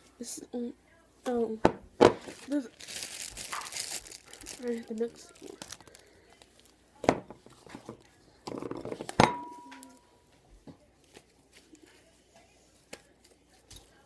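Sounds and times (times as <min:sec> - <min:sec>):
sharp clink against bowl: 0:09.2 - 0:10.0.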